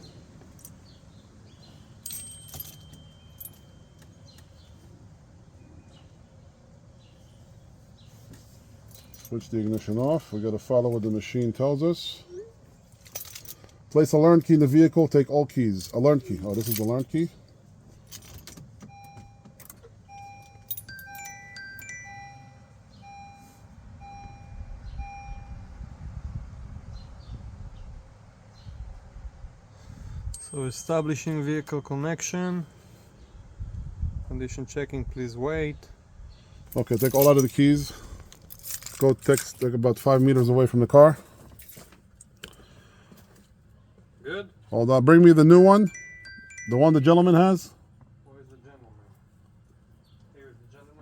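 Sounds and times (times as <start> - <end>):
car keys jingling: 0.4 - 4.7, 8.8 - 11.6, 12.8 - 25.5, 30.4 - 32.3, 36.7 - 43.5, 45.1 - 47.7
faint high steady tone: 18.9 - 25.9, 30.4 - 32.9
steady electronic beep: 20.1 - 25.7.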